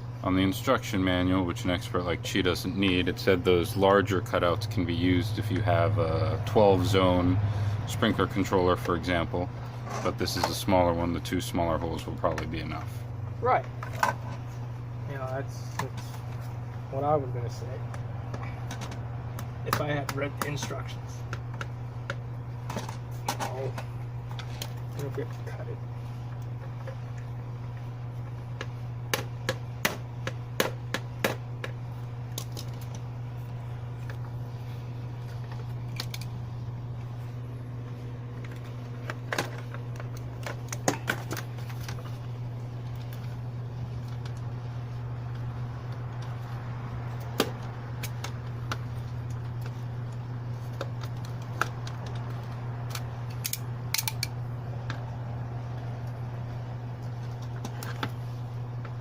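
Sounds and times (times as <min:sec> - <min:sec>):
steady low hum: 0:00.0 - 0:59.0
tool snapping plastic tabs: 0:52.9 - 0:54.3.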